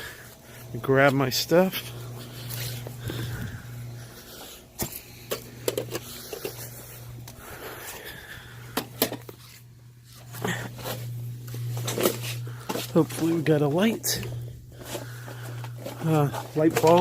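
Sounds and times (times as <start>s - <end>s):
steady low hum: 0.0s - 17.0s
person moving about: 0.2s - 17.0s
gear knocking and rustling: 14.8s - 17.0s.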